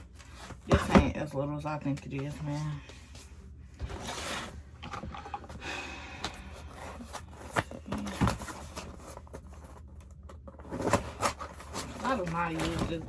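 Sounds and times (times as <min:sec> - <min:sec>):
packaging rustling: 0:06.2 - 0:13.0.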